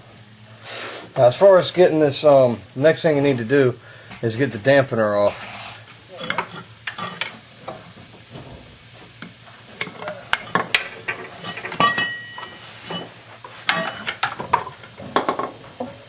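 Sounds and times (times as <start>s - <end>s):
metal tools clinking and scraping: 6.1s - 7.4s, 9.8s - 15.0s.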